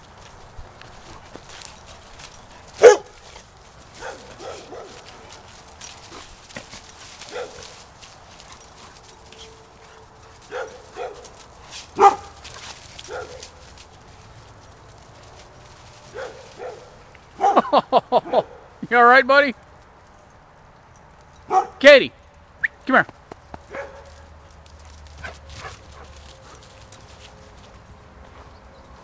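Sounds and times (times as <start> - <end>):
dogs barking: 2.6 - 3.2, 3.9 - 6.3, 7.2 - 7.8, 8.5 - 13.6, 16.1 - 18.7, 21.5 - 21.8, 23.6 - 24.2.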